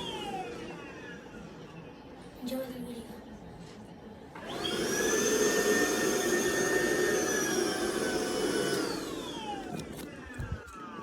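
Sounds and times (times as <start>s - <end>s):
vacuum cleaner motor whining: 0.0s - 1.9s, 4.4s - 11.0s.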